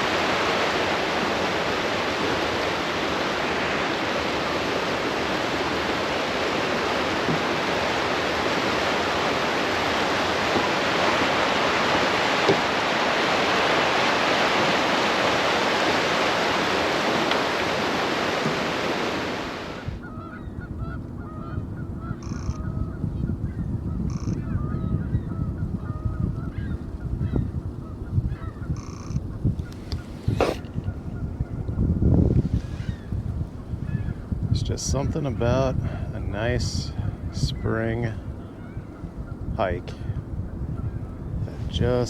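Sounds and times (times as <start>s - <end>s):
fast-flowing water rushing: 0.0s - 20.0s, 29.8s - 30.8s
low wind rumble: 0.0s - 42.0s
geese honking: 19.7s - 22.9s.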